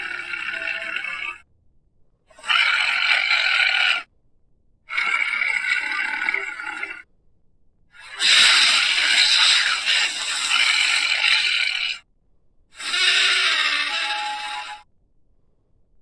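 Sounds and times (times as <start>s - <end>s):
harsh high-pitched dinosaur roars: 0.0s - 1.4s, 2.3s - 4.1s, 4.9s - 7.1s, 8.0s - 12.0s, 12.8s - 14.9s.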